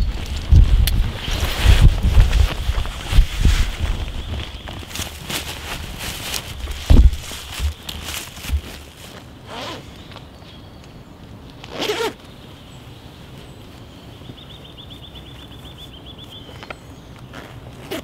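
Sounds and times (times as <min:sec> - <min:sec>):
zipper pulls: 0:09.4 - 0:09.9, 0:11.6 - 0:12.2, 0:17.3 - 0:18.0.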